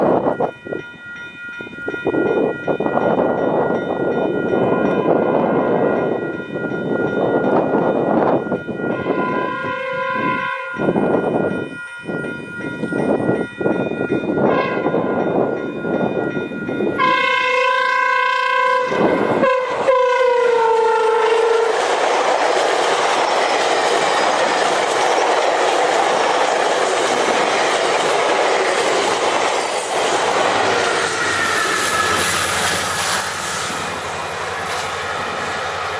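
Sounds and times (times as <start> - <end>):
train rushing on rails: 0.0 - 35.9
train horn blasts: 4.6 - 6.0, 9.0 - 11.1, 14.4 - 15.1, 17.0 - 21.9.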